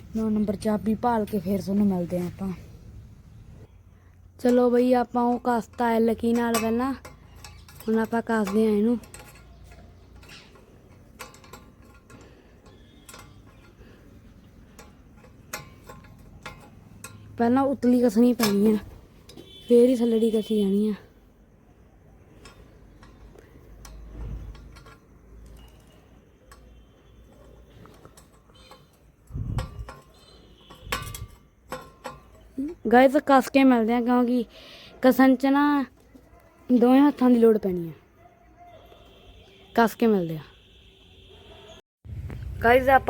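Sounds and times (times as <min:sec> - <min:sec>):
spanner clicking on a nut: 0:04.4 - 0:19.6, 0:22.2 - 0:32.8.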